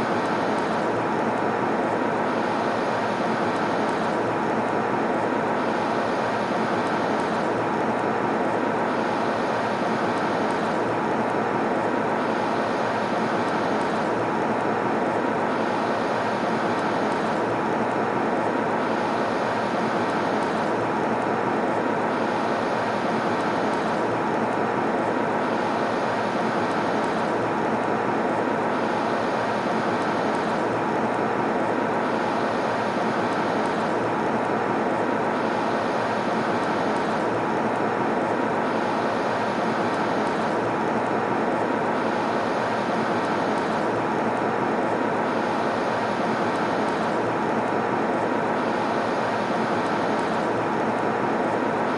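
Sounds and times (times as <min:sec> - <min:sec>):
airplane cabin noise: 0:00.0 - 0:51.9.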